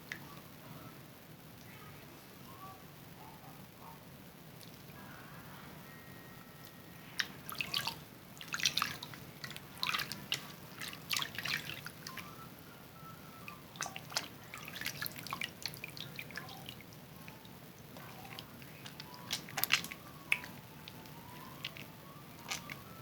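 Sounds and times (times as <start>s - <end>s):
water dripping: 6.6s - 12.6s, 13.2s - 23.0s
soap lathering squishes: 7.0s - 12.5s, 13.2s - 23.0s.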